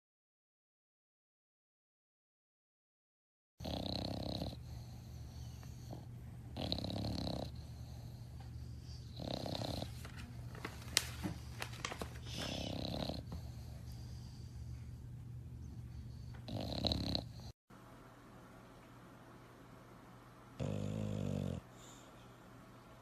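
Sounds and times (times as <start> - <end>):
dog snoring: 3.6 - 10.0, 12.2 - 14.5, 16.0 - 17.6, 20.6 - 22.1.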